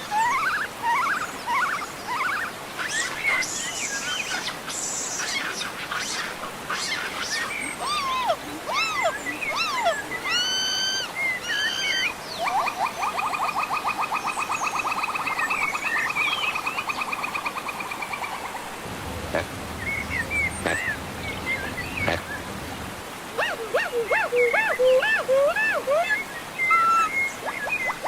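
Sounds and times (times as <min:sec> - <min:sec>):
monkey whistle-like cries: 0:23.4 - 0:27.2.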